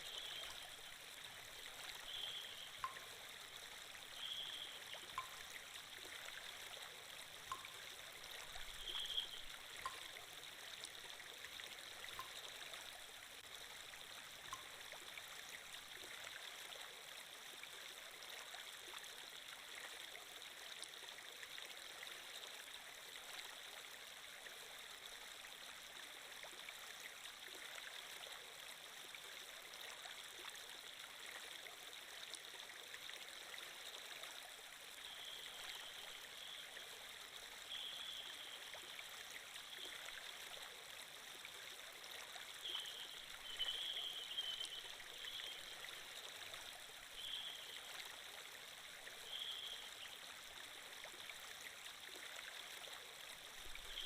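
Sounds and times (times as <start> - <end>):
trickling splashes: 0.0 - 13.3
stream flowing: 0.0 - 54.0.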